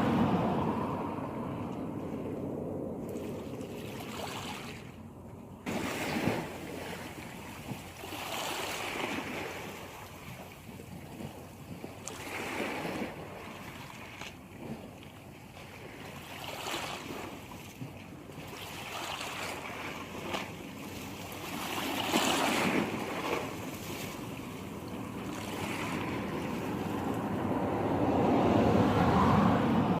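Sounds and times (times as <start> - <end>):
wind on microphone: 0.0 - 30.0
sea waves washing onto shore: 5.7 - 30.0.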